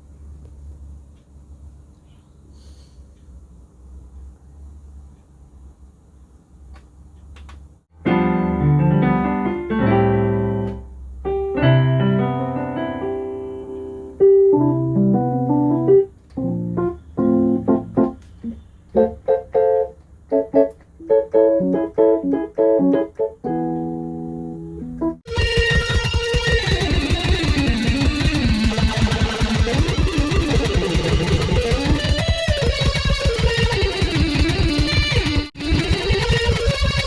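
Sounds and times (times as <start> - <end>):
synthesizer piano chords and notes: 8.0 - 18.3, 18.9 - 37.0.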